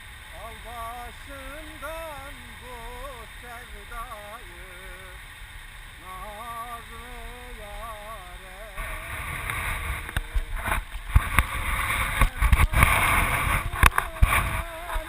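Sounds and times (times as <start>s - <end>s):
wind buffeting microphone: 5.8s - 15.0s.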